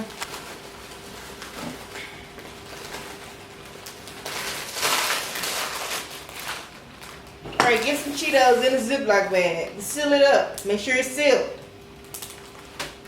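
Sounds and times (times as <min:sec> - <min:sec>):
plastic bag rustling: 0:00.0 - 0:09.2.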